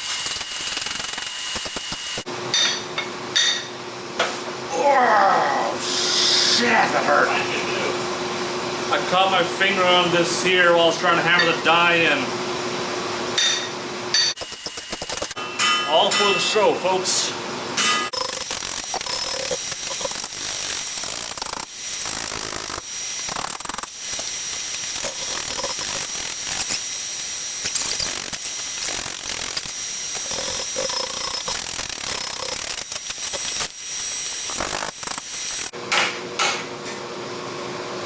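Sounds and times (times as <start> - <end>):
mechanical ratcheting and rubbing: 0.0 - 2.3, 14.4 - 15.4, 18.1 - 35.7.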